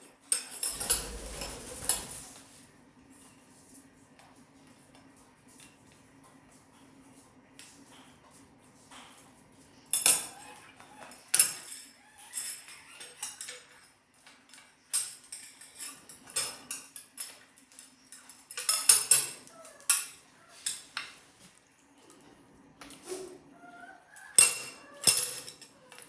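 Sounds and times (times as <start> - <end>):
metal spoon clinking on dish: 18.1 - 20.9.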